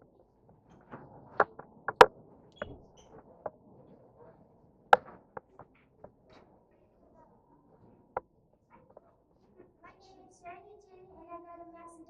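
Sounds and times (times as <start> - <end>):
sharp knocks and clicks: 0.7 - 3.6, 4.9 - 6.6.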